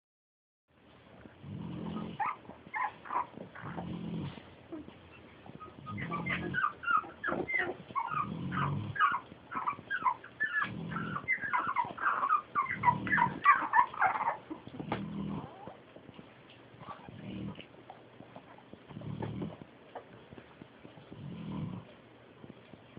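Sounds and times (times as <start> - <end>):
pig snoring: 1.4 - 4.8, 5.6 - 15.8, 16.8 - 17.7, 18.9 - 19.7, 21.1 - 22.0
puppies whimpering and squealing: 1.7 - 22.6.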